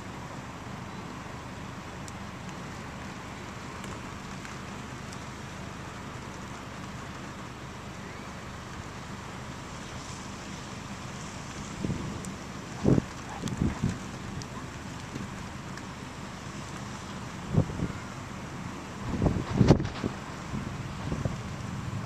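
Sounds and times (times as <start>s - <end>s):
rain: 0.0s - 22.0s
wind: 0.0s - 22.0s
faint ticks: 2.0s - 2.6s.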